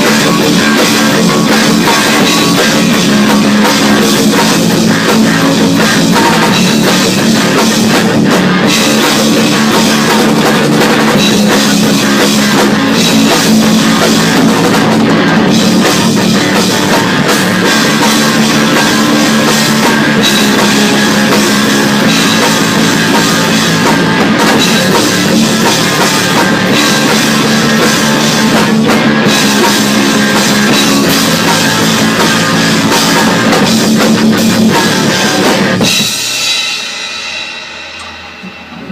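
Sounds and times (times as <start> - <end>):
loud rock music: 0.0 - 38.9
ringing decay: 35.8 - 38.9.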